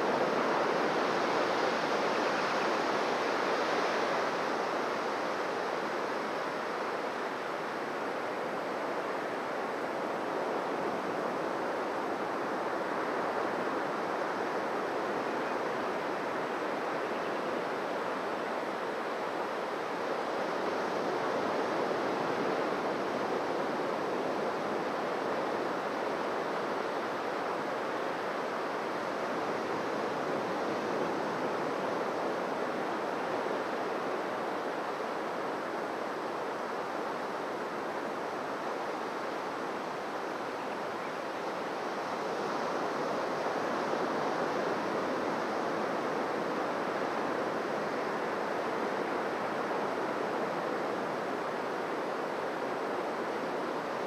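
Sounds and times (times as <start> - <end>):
waves breaking on a beach: 0.0 - 54.0.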